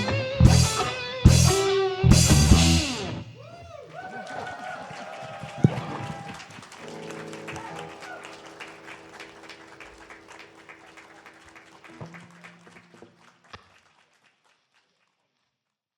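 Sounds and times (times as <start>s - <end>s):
electric guitar ringing: 0.0s - 3.8s, 6.8s - 13.2s
audience applauding: 3.6s - 15.2s.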